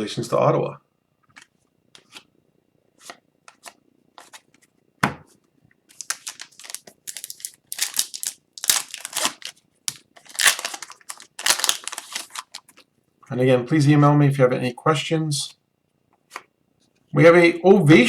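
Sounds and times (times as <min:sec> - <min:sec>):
foil wrapper crinkling: 0:05.9 - 0:12.8.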